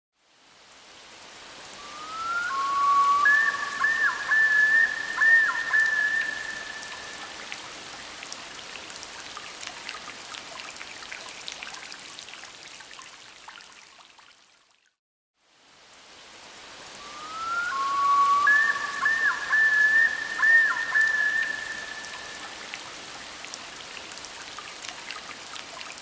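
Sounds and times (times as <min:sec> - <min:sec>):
steady hiss: 0:00.2 - 0:09.1, 0:15.5 - 0:24.4
bird of prey whistled call: 0:01.8 - 0:07.1, 0:17.0 - 0:22.4.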